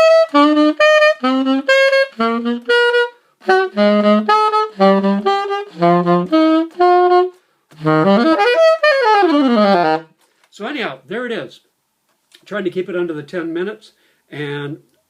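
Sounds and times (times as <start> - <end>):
alto saxophone notes: 0.0 - 10.2.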